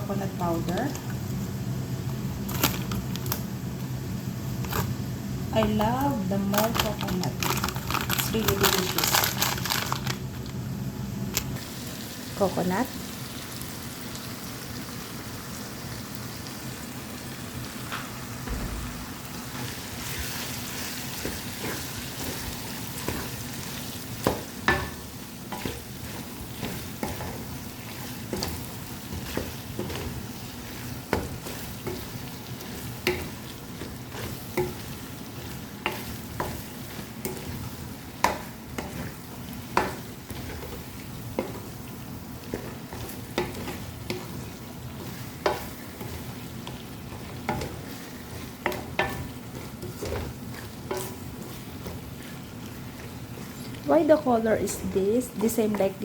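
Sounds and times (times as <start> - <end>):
curry sizzling in a pan: 11.5 - 56.0.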